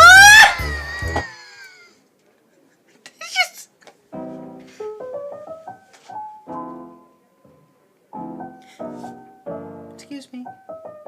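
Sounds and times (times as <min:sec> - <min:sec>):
piano chords and melody: 0:04.1 - 0:11.0.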